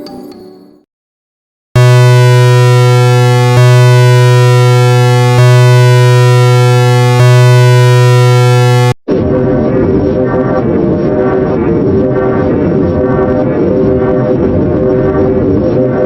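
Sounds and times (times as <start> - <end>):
low buzzing alarm tone: 1.8 - 11.3.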